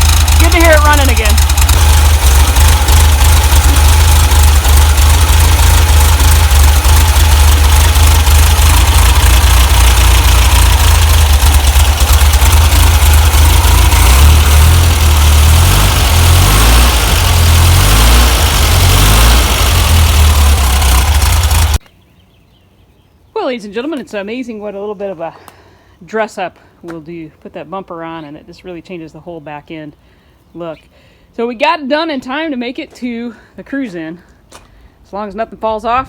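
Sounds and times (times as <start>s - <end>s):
car engine idling: 0.0s - 21.8s.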